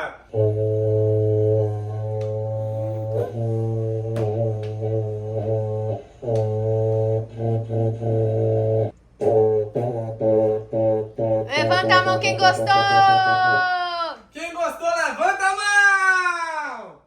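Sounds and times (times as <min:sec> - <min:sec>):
held chords over low bass: 0:00.3 - 0:13.7.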